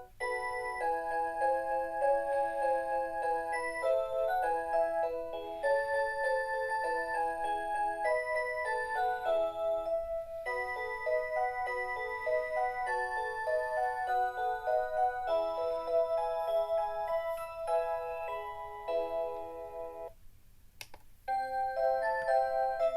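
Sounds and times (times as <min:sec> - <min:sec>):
electronic alarm clock melody: 0:00.0 - 0:20.1, 0:21.3 - 0:22.9.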